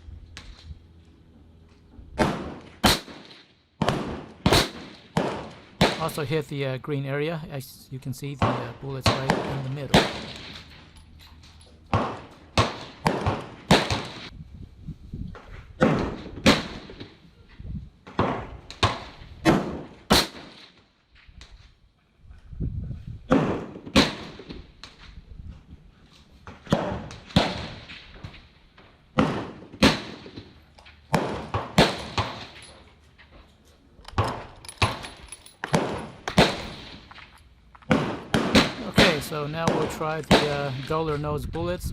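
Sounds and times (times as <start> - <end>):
gunshots on a shooting range: 2.1 - 6.3, 8.2 - 10.9, 11.9 - 14.3, 15.8 - 17.2, 18.0 - 20.8, 23.2 - 25.1, 26.4 - 32.8, 34.2 - 41.2.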